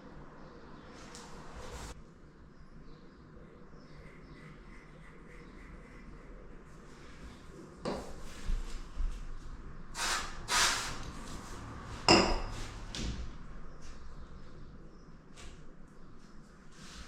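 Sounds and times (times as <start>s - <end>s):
short scraping sounds: 10.0s - 11.7s.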